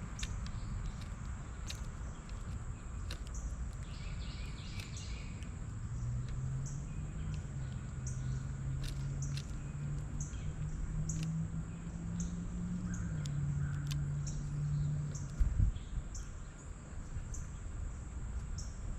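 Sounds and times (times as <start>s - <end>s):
small bird chip call: 0.0s - 5.6s.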